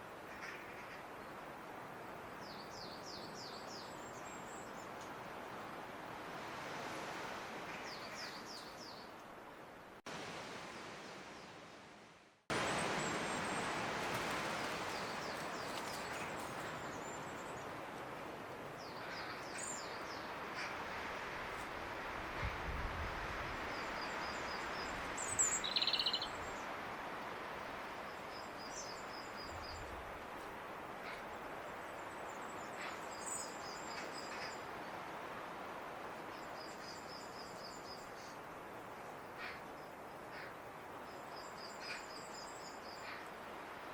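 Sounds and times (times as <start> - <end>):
background hiss: 0.0 - 43.9
robin singing: 25.2 - 26.4.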